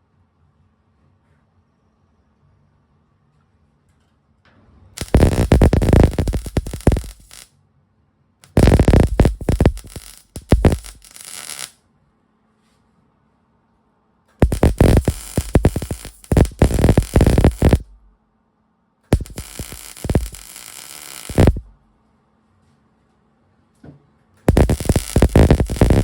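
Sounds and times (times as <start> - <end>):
welding arc crackling and sizzling: 5.0 - 7.5, 8.5 - 11.8, 14.4 - 18.1, 19.1 - 21.8, 24.5 - 26.0.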